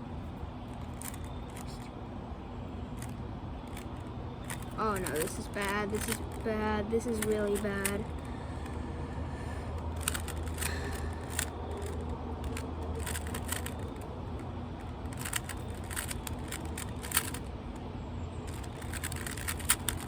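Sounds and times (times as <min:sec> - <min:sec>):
steady low hum: 0:00.0 - 0:20.0
plastic cube clicking: 0:00.7 - 0:01.9, 0:03.0 - 0:06.4, 0:09.8 - 0:17.5, 0:18.5 - 0:20.0.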